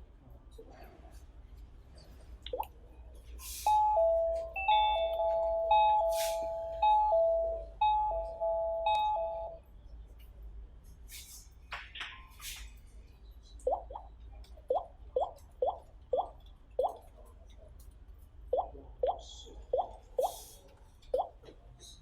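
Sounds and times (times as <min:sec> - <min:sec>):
electronic doorbell chime: 0:03.7 - 0:09.6.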